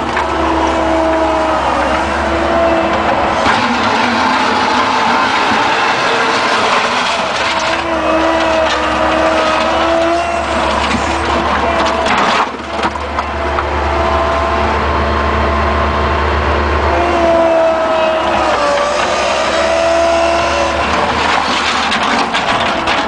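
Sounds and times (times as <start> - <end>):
engine running under load: 0.0 - 23.0
hydraulic whine: 0.0 - 23.0
bucket clanking: 3.0 - 13.3, 20.7 - 23.0.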